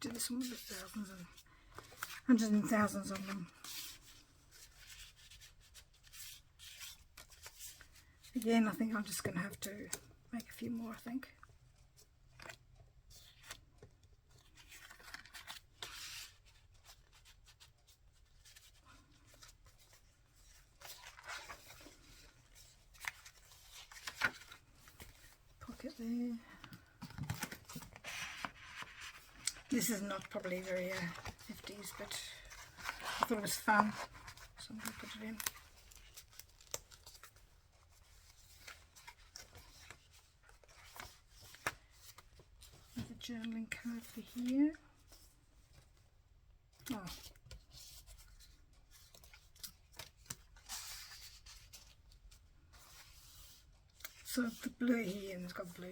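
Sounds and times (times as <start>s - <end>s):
paper and card rustling: 0.0s - 46.0s, 46.7s - 55.9s
paper rustling and tapping: 26.6s - 37.3s.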